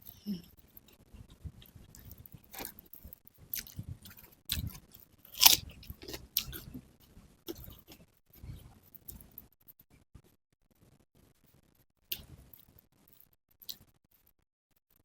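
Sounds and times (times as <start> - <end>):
food being chewed: 0.0 - 9.5.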